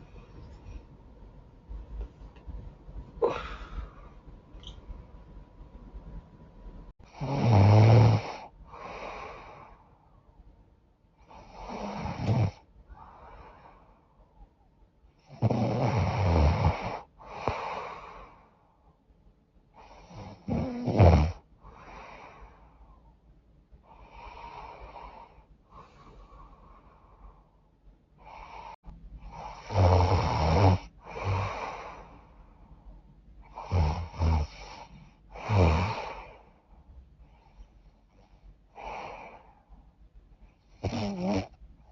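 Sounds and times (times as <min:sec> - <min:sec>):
soft breathing: 0:02.1 - 0:04.4, 0:08.4 - 0:10.2, 0:11.2 - 0:14.5, 0:16.7 - 0:19.0, 0:21.4 - 0:29.7, 0:30.8 - 0:40.8
woman snoring: 0:03.2 - 0:04.0, 0:07.0 - 0:09.8, 0:11.3 - 0:13.5, 0:15.3 - 0:18.4, 0:19.9 - 0:22.3, 0:29.3 - 0:32.1, 0:33.5 - 0:36.5, 0:40.8 - 0:41.5.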